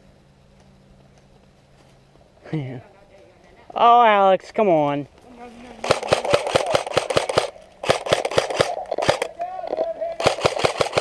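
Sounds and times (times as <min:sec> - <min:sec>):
rapid crunching and clicking: 0:05.1 - 0:11.0.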